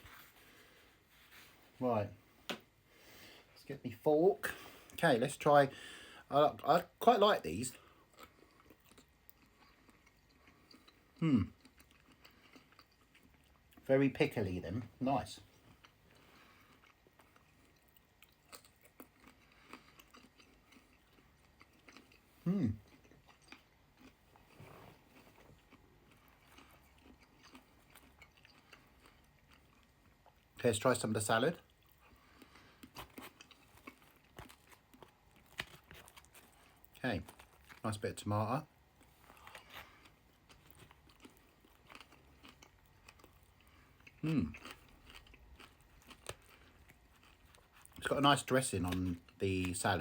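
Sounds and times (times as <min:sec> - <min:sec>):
person chewing food: 0:07.7 - 0:13.9, 0:15.4 - 0:30.6, 0:31.5 - 0:37.9, 0:38.6 - 0:48.2
person humming mm: 0:11.2 - 0:11.5, 0:22.4 - 0:22.8.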